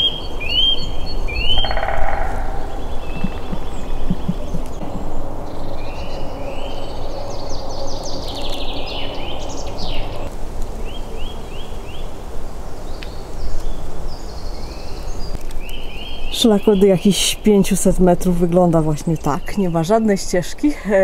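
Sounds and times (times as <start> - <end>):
songbirds singing: 0.0 - 21.0.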